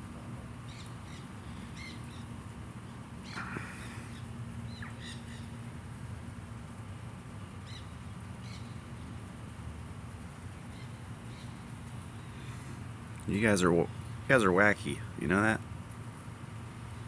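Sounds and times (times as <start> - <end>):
steady low hum: 0.0 - 17.0
birds chirping: 2.9 - 5.7
harsh bird call: 3.3 - 5.5.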